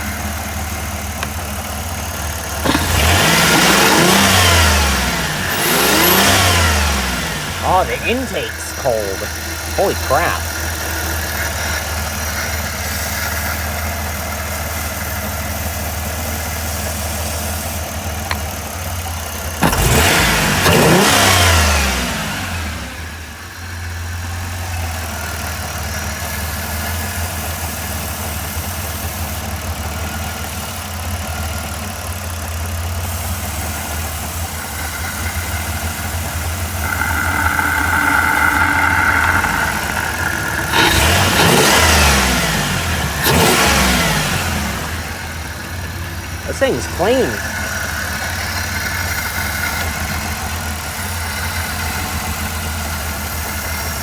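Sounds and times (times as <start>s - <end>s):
van engine idling and revving: 0.0s - 54.0s
high tone: 7.6s - 10.5s, 36.8s - 42.0s.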